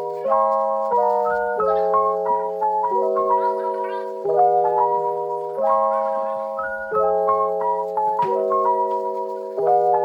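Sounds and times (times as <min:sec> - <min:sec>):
light background music: 0:00.0 - 0:10.0.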